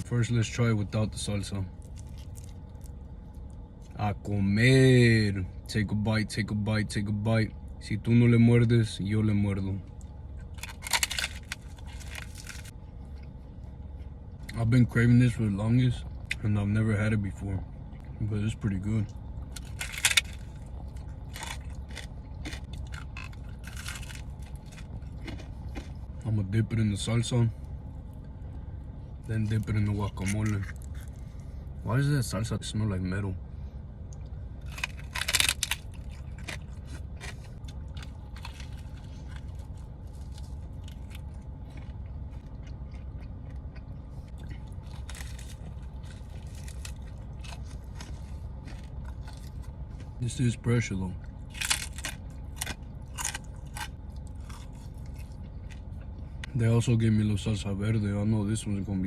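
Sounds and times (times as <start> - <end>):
steady low hum: 0.0 - 59.0
crunchy food being chewed: 1.7 - 4.0, 9.9 - 14.6, 19.1 - 26.2, 29.2 - 31.6, 34.1 - 50.5, 51.1 - 56.6.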